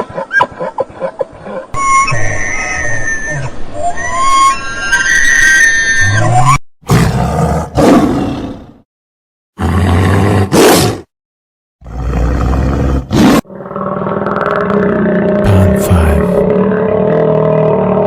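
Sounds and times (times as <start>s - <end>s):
large animal roaring: 11.8s - 18.0s.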